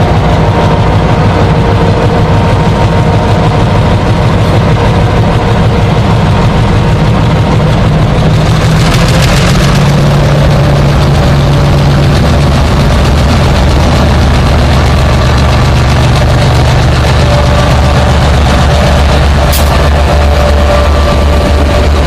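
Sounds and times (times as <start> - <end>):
diesel locomotive engine drone: 0.0 - 22.0.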